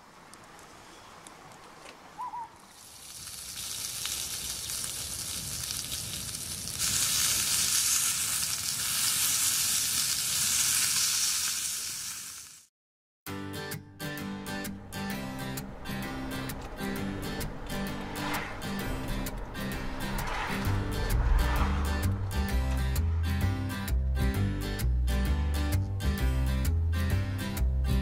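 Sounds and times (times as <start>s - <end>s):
meat sizzling on a grill: 2.8s - 12.7s.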